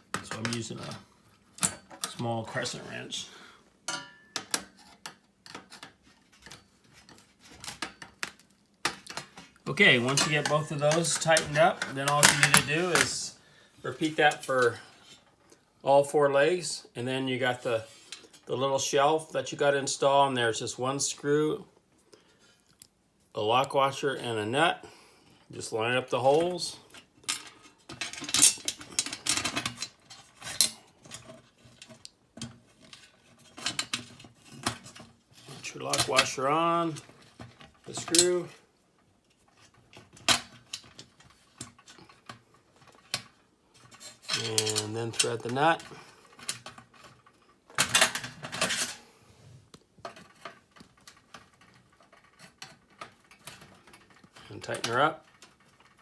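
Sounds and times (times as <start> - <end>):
clatter of metal parts: 3.9 - 13.4, 26.4 - 38.6, 39.4 - 49.1, 50.0 - 56.0.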